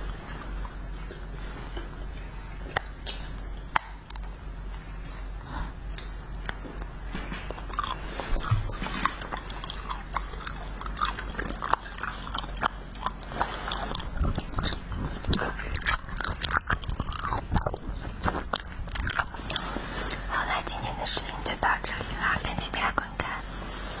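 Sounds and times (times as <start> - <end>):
chewing wax candy clicks: 9.1 - 19.7.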